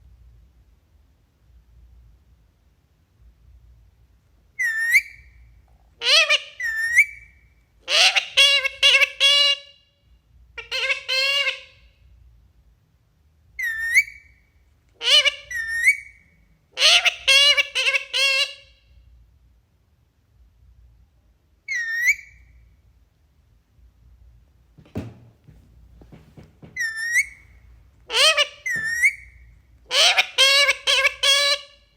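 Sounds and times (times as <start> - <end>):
parakeet calling out words: 29.9 - 31.8.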